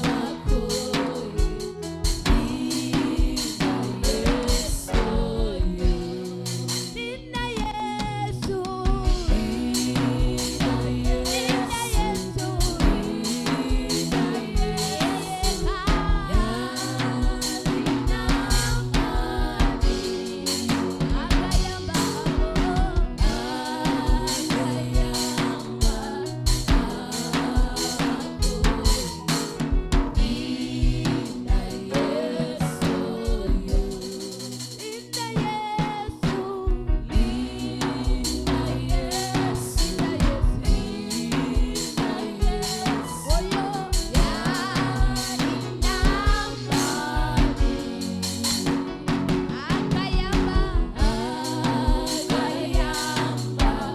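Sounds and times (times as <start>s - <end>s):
drum kit beat: 0.0s - 53.9s
gospel band playing: 0.0s - 53.9s
people singing: 0.0s - 53.9s.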